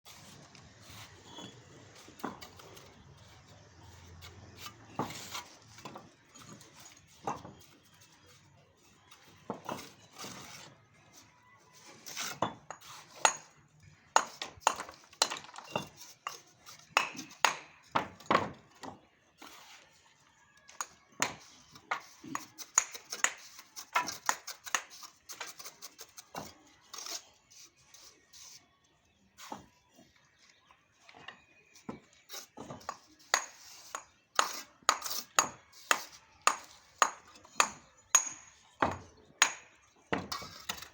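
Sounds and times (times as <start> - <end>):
trowel scraping bricks: 0.1 - 20.0, 20.8 - 28.7, 31.8 - 40.9.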